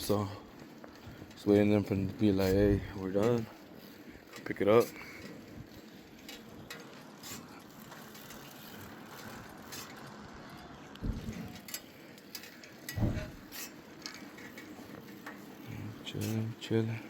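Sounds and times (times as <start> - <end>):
bicycle chain and frame rattling: 0.0 - 17.0
bicycle tyre rumble on road: 0.0 - 17.0
thump: 13.0 - 13.4.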